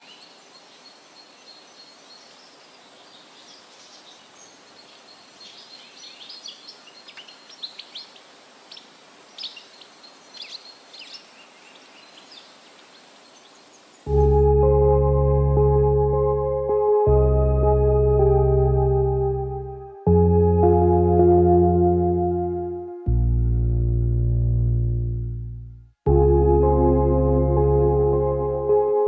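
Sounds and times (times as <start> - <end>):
steady outdoor hiss: 0.0 - 14.5
ambient music with low tones: 14.1 - 29.0.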